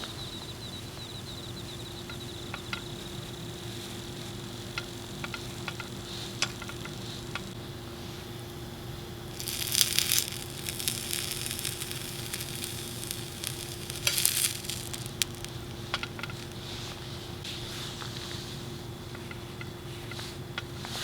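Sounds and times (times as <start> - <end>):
food sizzling in a hot pan: 8.3 - 16.8.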